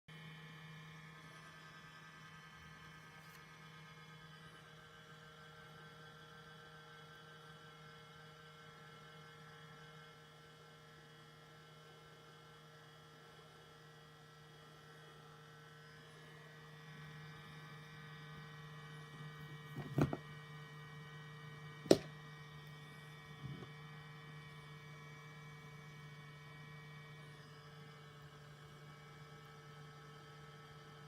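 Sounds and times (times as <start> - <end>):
laptop low hum with whining: 0.1 - 31.0.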